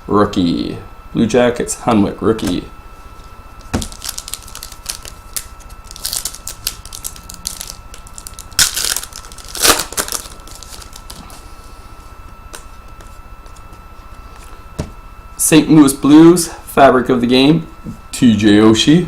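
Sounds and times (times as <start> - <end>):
wrappers crinkling and rustling: 3.2 - 11.4.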